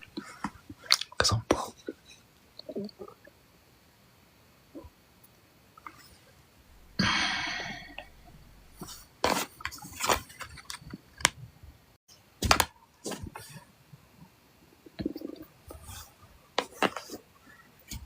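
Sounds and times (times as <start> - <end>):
stomach growling: 2.6 - 3.4, 5.9 - 9.0, 14.7 - 16.2.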